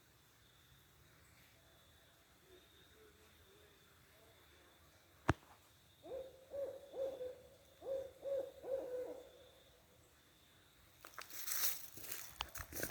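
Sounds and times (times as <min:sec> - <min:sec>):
owl hooting: 0:06.0 - 0:09.8
rustling and crackling: 0:11.0 - 0:12.9.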